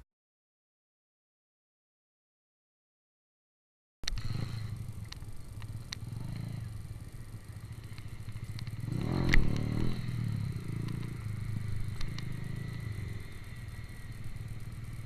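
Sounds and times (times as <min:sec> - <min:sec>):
motorcycle engine running: 0:04.1 - 0:15.0.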